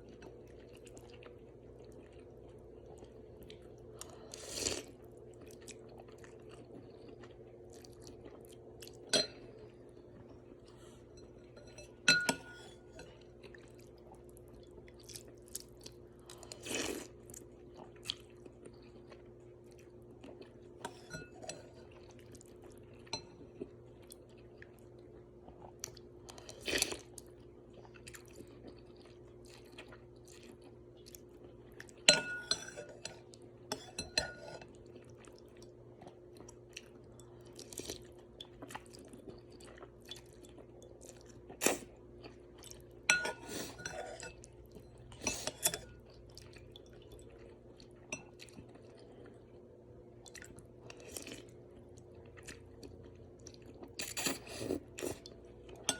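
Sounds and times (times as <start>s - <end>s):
chewing and mouth sounds: 0.0s - 11.2s, 13.0s - 32.2s, 34.6s - 55.9s
utensils clinking against bowl: 11.2s - 13.1s, 32.1s - 34.6s.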